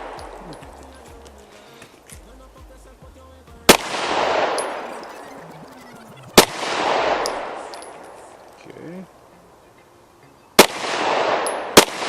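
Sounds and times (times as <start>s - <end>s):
pistol shots: 0.0s - 0.8s, 3.7s - 5.1s, 6.4s - 8.3s, 10.6s - 12.0s
rolling echo of gunshot: 3.7s - 5.0s, 6.4s - 8.1s, 10.6s - 12.0s.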